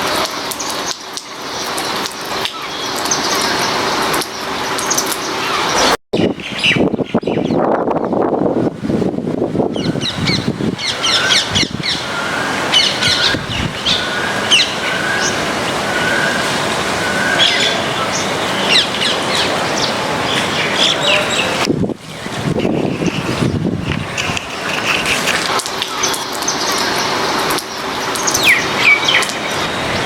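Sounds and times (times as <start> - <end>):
rain hiss: 0.0 - 6.7, 7.9 - 30.0
small birds chirping and squawking: 9.7 - 21.7.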